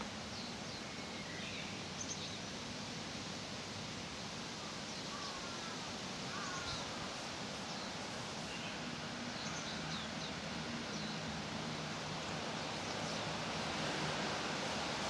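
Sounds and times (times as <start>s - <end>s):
leaves rustling in breeze: 0.0s - 15.0s
distant traffic hum: 1.8s - 15.0s.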